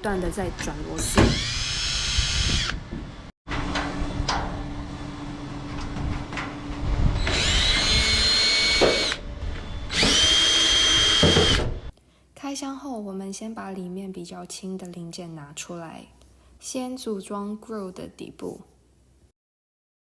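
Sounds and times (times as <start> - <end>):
power drill driving screws: 1.2 - 2.8, 7.2 - 9.2, 9.9 - 11.9.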